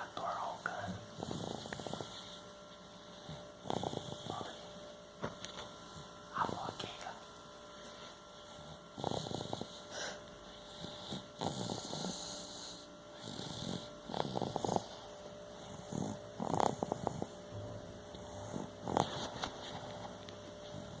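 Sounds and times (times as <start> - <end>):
person snoring: 3.6 - 4.8, 8.6 - 15.1, 15.7 - 17.3.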